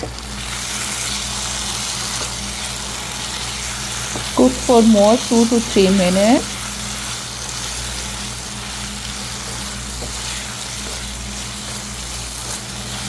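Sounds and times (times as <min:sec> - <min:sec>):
curry sizzling in a pan: 0:00.0 - 0:13.0.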